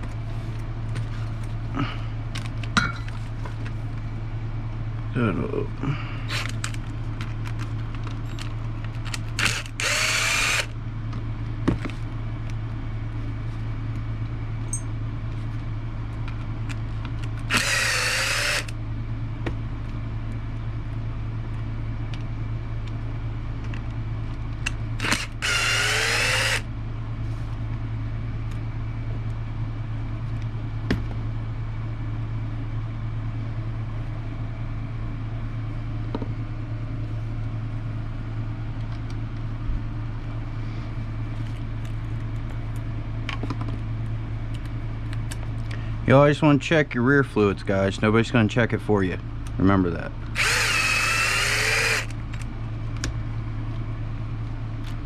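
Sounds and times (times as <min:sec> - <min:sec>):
electric drill-driver whirring: 0:06.3 - 0:06.8, 0:09.4 - 0:10.7, 0:17.5 - 0:18.8, 0:25.0 - 0:26.7, 0:50.4 - 0:52.2
parts and tools clicking: 0:17.5 - 0:18.7, 0:24.6 - 0:26.6, 0:50.4 - 0:52.4
low hum: 0:23.8 - 0:27.6, 0:50.2 - 0:53.8.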